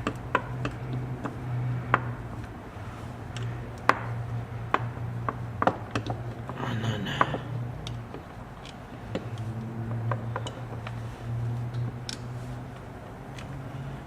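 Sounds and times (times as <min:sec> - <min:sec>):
metal parts clicking and tapping: 0:07.2 - 0:11.0.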